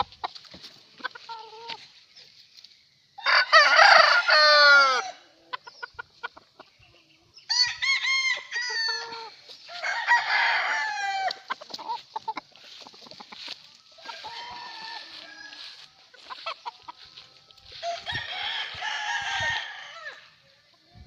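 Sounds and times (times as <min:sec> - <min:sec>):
rooster clucking: 0:00.0 - 0:02.0, 0:03.4 - 0:07.1, 0:07.8 - 0:20.8
roosters crowing: 0:03.2 - 0:05.5, 0:07.4 - 0:20.5.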